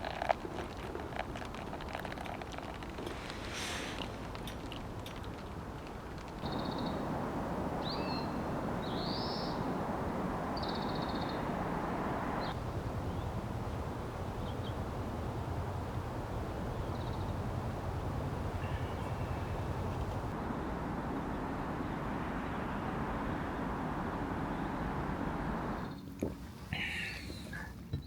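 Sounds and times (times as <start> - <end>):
steady outdoor hiss: 0.0 - 28.0
low steady rumble: 2.7 - 26.6
birds giving short high calls: 16.6 - 20.3.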